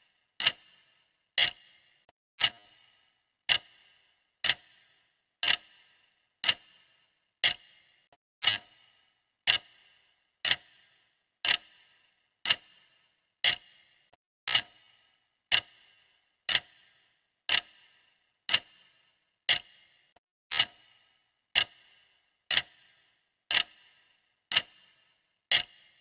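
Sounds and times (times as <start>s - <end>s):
clock ticking: 1.4s - 2.8s, 3.4s - 5.8s, 6.4s - 6.8s, 7.4s - 7.8s, 8.4s - 8.8s, 9.4s - 11.8s, 12.4s - 12.8s, 13.4s - 13.8s, 14.5s - 14.8s, 15.5s - 15.9s, 16.5s - 16.9s, 17.5s - 17.9s, 18.5s - 18.8s, 19.5s - 19.8s, 20.5s - 20.9s, 21.5s - 21.9s, 22.5s - 22.9s, 23.5s - 24.8s, 25.5s - 26.0s.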